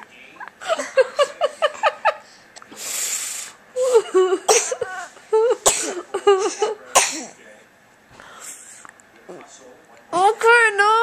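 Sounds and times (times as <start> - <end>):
woman laughing: 3.8 - 6.8.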